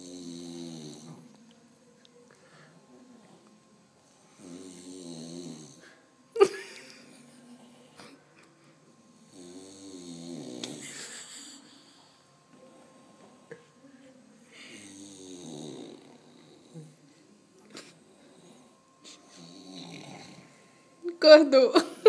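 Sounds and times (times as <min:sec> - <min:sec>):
person snoring: 0:00.0 - 0:01.3, 0:04.4 - 0:06.0, 0:09.0 - 0:12.2, 0:14.5 - 0:17.0, 0:17.9 - 0:20.6.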